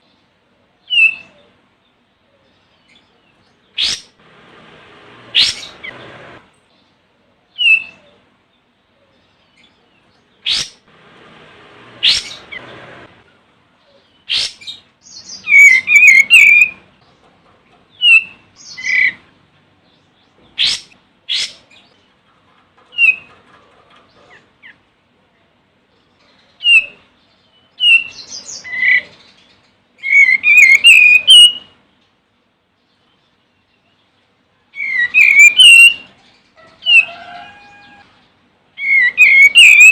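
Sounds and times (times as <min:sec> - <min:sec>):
bird calling: 0:02.3 - 0:04.2, 0:05.1 - 0:06.5, 0:08.9 - 0:16.9, 0:20.4 - 0:21.9, 0:30.0 - 0:31.8, 0:34.8 - 0:38.2, 0:38.8 - 0:39.9.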